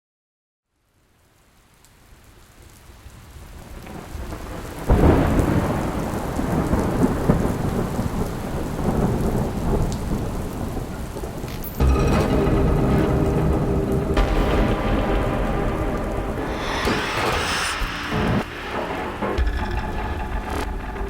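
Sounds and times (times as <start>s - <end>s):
rain falling: 0.8s - 14.7s
rumbling thunderclap: 4.2s - 10.4s
music: 11.8s - 21.0s.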